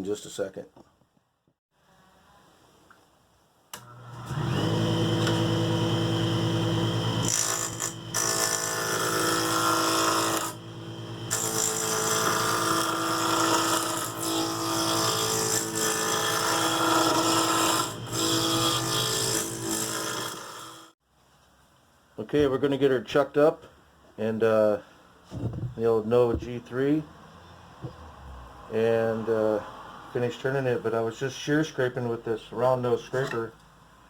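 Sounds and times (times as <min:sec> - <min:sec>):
wood lathe running: 0:04.0 - 0:20.9.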